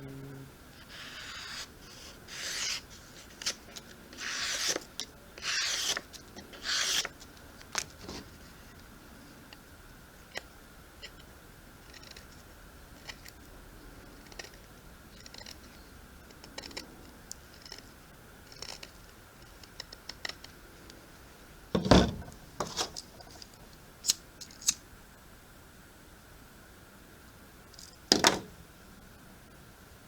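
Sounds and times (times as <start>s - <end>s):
knife scrapes and clicks: 0.8s - 7.2s.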